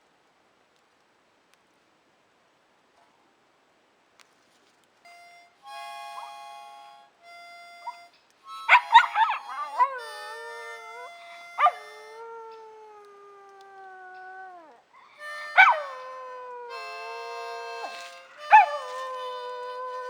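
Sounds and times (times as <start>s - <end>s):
harmonica chords: 5.1s - 12.7s, 15.1s - 20.0s
dog howling: 8.6s - 20.0s.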